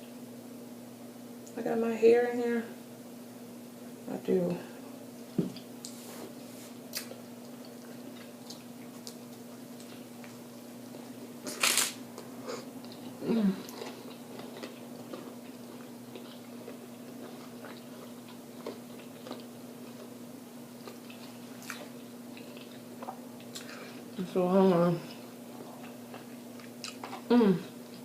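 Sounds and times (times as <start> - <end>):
steady low hum: 0.0 - 28.0
crunchy food chewing: 5.6 - 24.2, 25.0 - 28.0.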